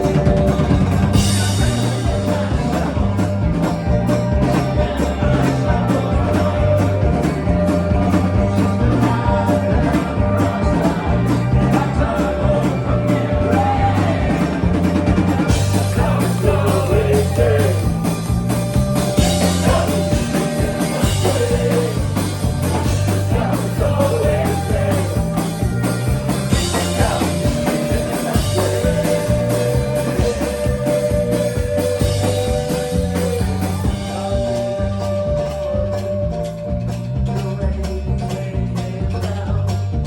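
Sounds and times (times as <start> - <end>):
bass playing a steady beat: 0.0 - 40.0
drums: 0.0 - 40.0.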